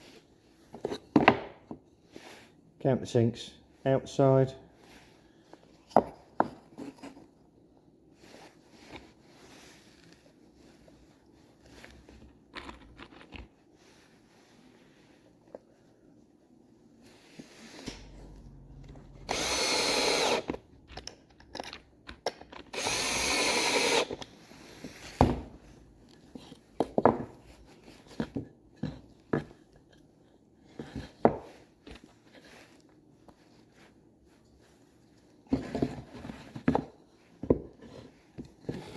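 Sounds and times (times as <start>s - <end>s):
wooden pieces knocking on workbench: 1.1s - 1.6s.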